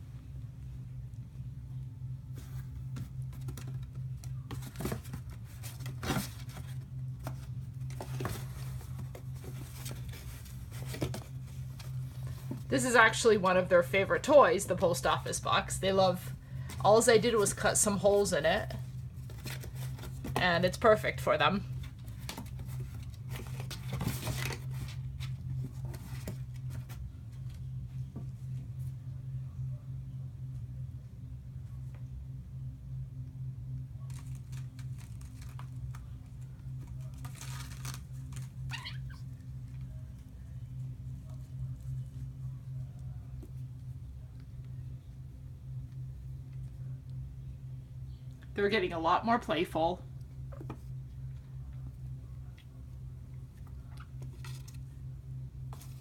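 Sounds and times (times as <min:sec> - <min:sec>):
steady low hum: 0:00.0 - 0:56.0
kittens scratching in cardboard box: 0:02.2 - 0:12.8, 0:15.9 - 0:21.0, 0:21.7 - 0:27.6, 0:34.1 - 0:44.4, 0:53.5 - 0:55.0.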